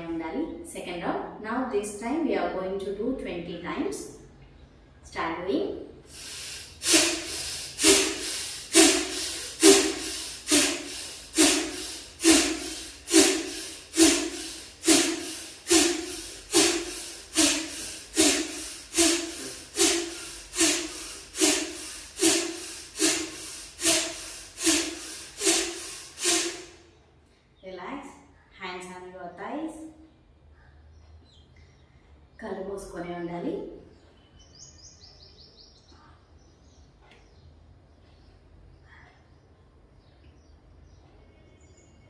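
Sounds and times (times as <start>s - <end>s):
woman's forceful rhythmic breathing: 6.0s - 26.9s.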